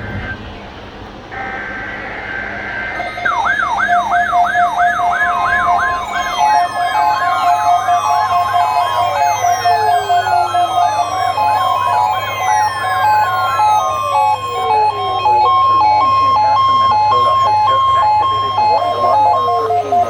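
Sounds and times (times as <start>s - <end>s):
faint steady tones: 0.0s - 20.0s
falling siren wails: 0.0s - 20.0s
low hum: 0.0s - 20.0s
fast yelp siren: 1.4s - 20.0s.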